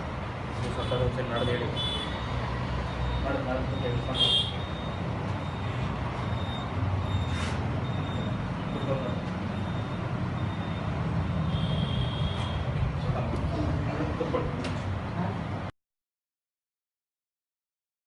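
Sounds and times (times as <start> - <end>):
faint high-pitched beeps: 2.9 - 11.5.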